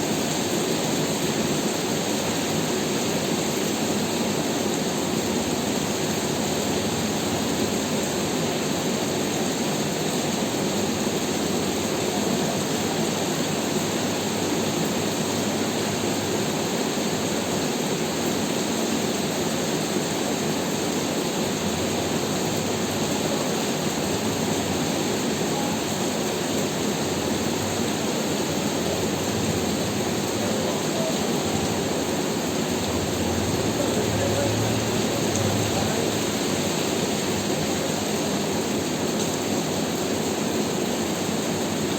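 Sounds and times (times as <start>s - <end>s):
rain falling: 0.0s - 41.9s.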